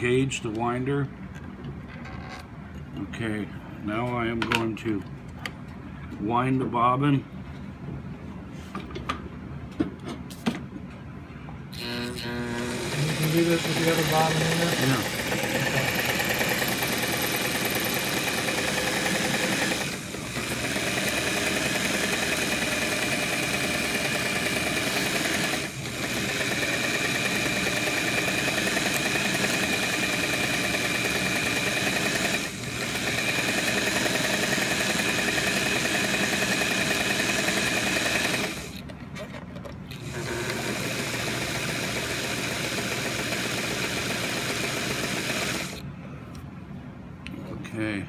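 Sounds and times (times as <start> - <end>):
sewing machine running: 11.7 - 38.8, 39.9 - 45.8.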